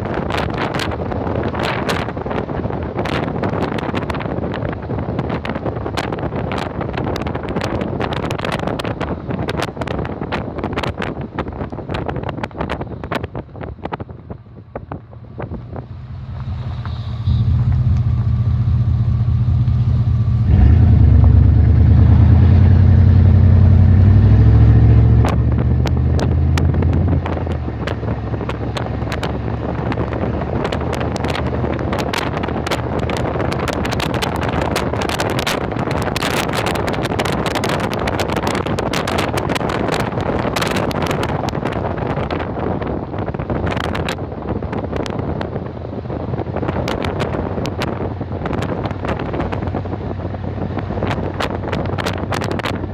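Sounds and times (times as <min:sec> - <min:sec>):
tyre and road noise: 0:00.0 - 0:52.9
vehicle engine accelerating: 0:14.8 - 0:52.9.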